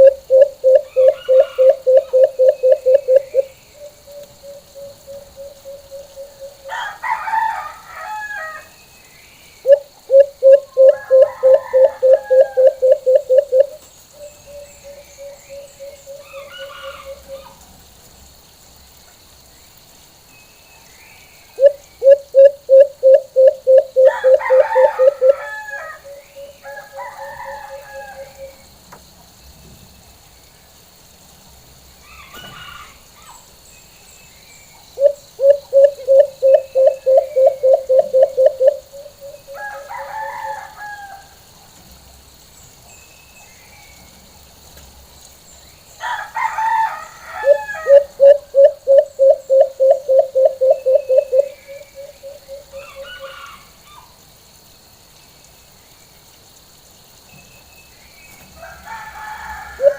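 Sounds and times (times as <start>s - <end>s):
dove low hooting call: 0.0s - 7.4s, 9.6s - 17.6s, 21.6s - 28.6s, 35.0s - 41.2s, 47.4s - 53.6s.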